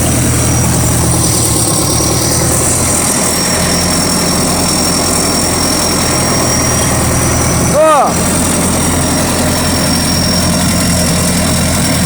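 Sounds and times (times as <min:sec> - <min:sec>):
tracked vehicle engine running: 0:00.0 - 0:12.0
thin high whine: 0:03.0 - 0:11.5.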